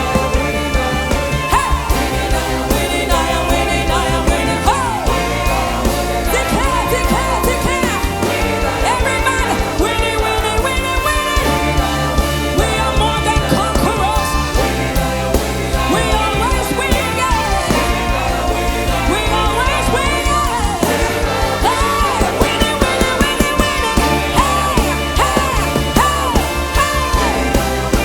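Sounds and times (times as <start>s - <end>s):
singing over a full band: 0.0s - 28.0s.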